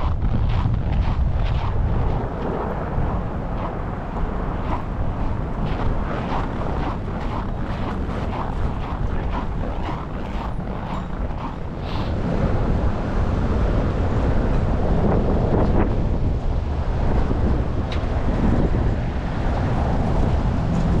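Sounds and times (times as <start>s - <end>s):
footsteps in snow: 0.0s - 12.2s
wind buffeting microphone: 0.0s - 21.0s.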